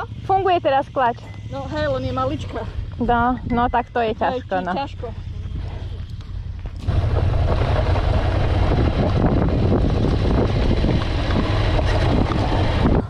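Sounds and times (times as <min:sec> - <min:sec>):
motorcycle engine running: 0:00.0 - 0:13.0
wind rushing over microphone: 0:05.3 - 0:13.0.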